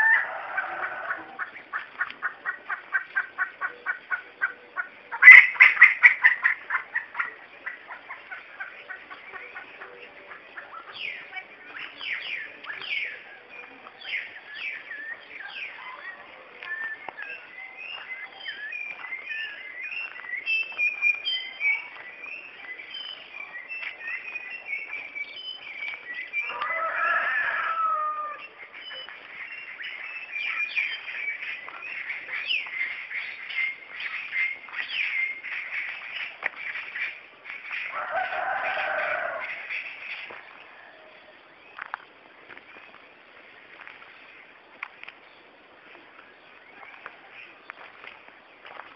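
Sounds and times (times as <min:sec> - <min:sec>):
birds chirping: 0:00.0 - 0:48.9.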